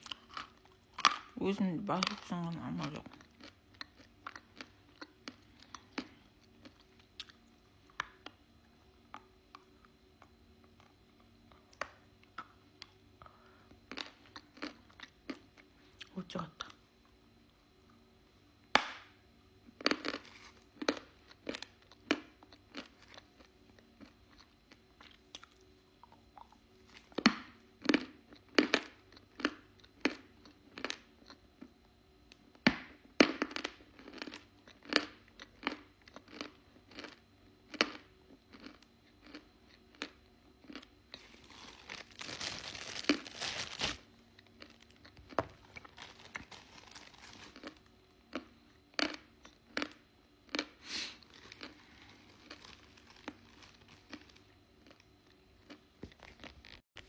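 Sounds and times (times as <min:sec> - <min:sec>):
quiet chewing: 0:02.0 - 0:17.2, 0:19.8 - 0:31.8, 0:34.0 - 0:57.0
scratchy crunching noise: 0:41.2 - 0:47.8, 0:50.9 - 0:54.5.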